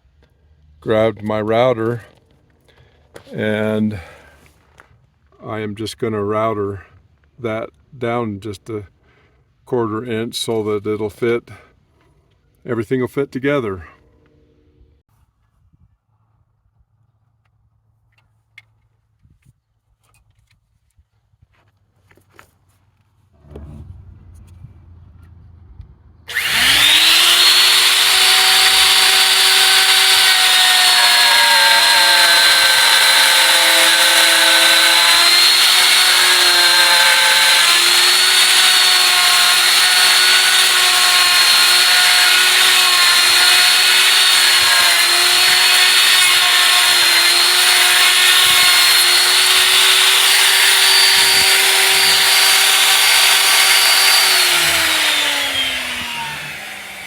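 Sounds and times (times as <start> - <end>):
electric router whining: 26.3 - 57.0.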